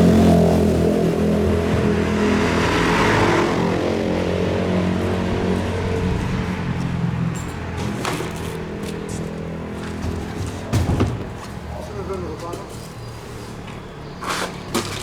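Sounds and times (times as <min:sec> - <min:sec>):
engine running at low revs: 0:00.0 - 0:10.7.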